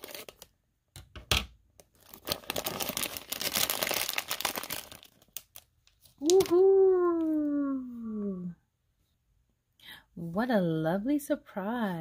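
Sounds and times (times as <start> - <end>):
wrapper crinkling and tearing: 0.0 - 0.5, 1.8 - 6.7.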